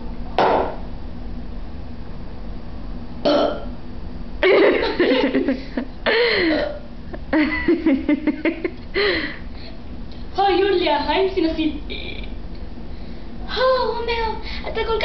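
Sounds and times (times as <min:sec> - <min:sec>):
person burping: 0:03.2 - 0:03.8, 0:06.4 - 0:06.9.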